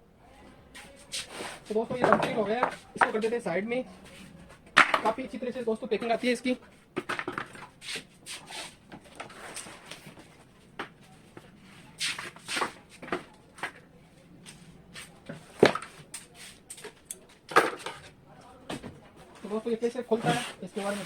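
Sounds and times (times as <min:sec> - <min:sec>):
packaging rustling and scraping: 0:07.1 - 0:10.5.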